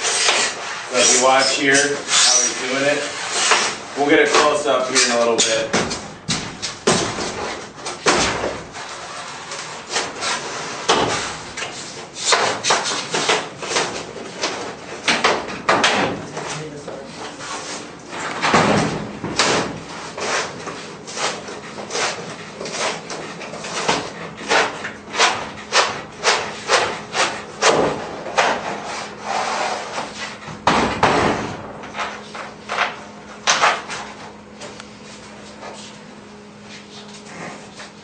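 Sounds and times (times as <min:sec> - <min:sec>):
scraping rustle: 0:00.0 - 0:05.6
knocks against garage door: 0:05.7 - 0:08.7, 0:15.0 - 0:16.2, 0:18.4 - 0:19.8, 0:30.5 - 0:31.8.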